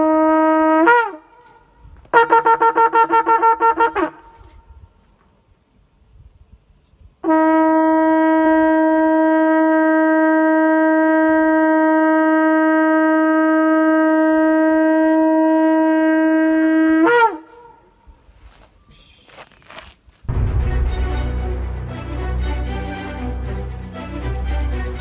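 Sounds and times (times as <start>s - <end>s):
shofar blast: 0.0s - 4.6s, 7.2s - 17.9s, 20.3s - 23.9s.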